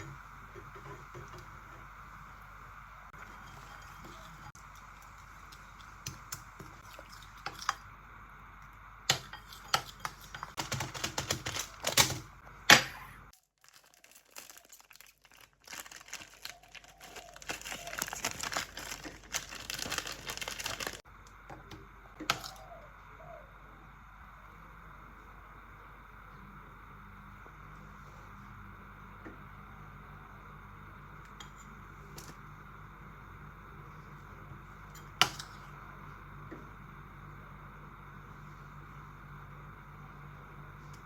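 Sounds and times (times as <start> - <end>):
crinkling rustling handling noises: 13.4 - 21.0.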